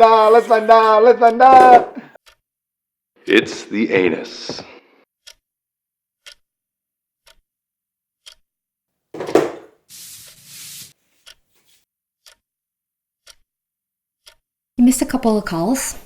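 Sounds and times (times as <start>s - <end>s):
clock ticking: 13.2s - 13.4s.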